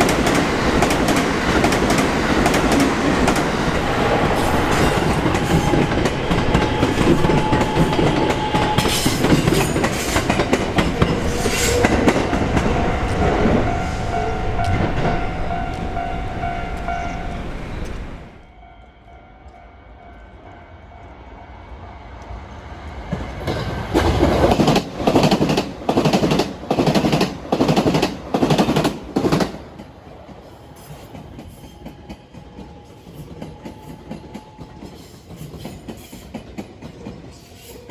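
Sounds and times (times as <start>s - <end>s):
train wheels clattering over rail joints: 0.0s - 13.3s
train noise: 0.0s - 37.9s
crossing warning bell ringing: 0.6s - 21.3s.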